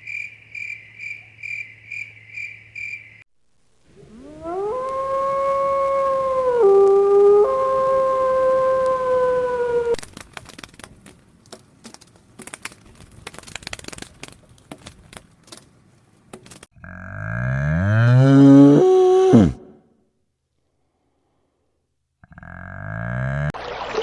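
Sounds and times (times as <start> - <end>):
dog howling: 4.1 - 10.0.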